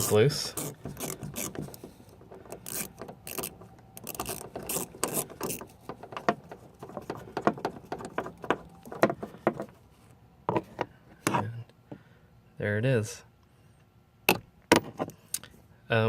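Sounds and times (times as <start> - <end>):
ratchet clicking: 0.0 - 8.5.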